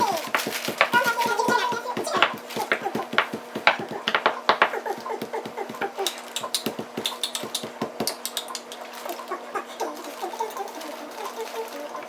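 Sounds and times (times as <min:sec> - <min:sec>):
steady low hum: 0:00.0 - 0:12.0.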